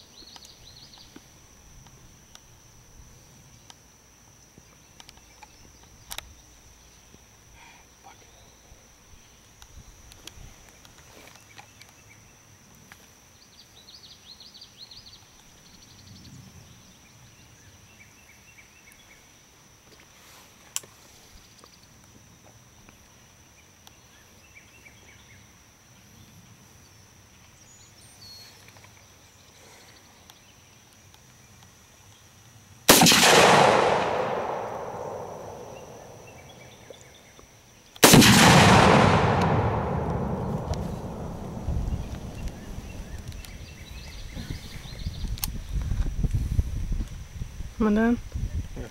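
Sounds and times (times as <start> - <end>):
rifle shots with echo: 32.9 - 36.6, 38.0 - 43.3
faint chirping: 33.2 - 45.8.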